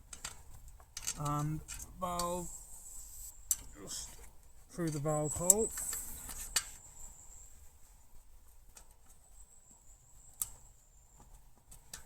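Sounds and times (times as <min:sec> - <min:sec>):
high insect trill: 0:04.8 - 0:07.7.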